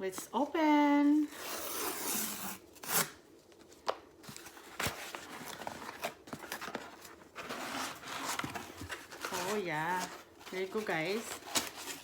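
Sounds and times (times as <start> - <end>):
packaging clicks and scrapes: 4.3 - 12.0.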